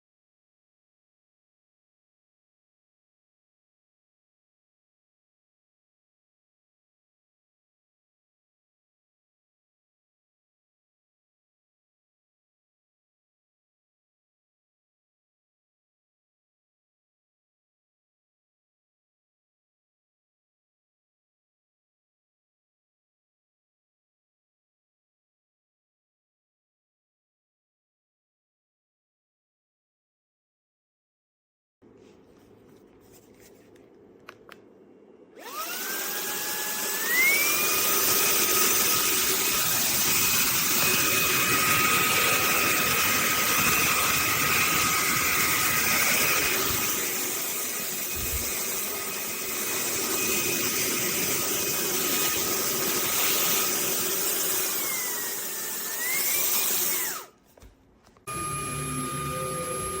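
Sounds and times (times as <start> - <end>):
handheld vacuum motor whining: 35.4 - 57.4, 58.3 - 60.0
higher motor whine: 58.3 - 60.0.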